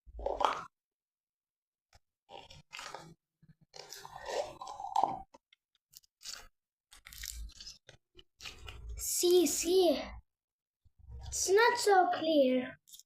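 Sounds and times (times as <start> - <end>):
slime squelching by hand: 2.3 - 9.0.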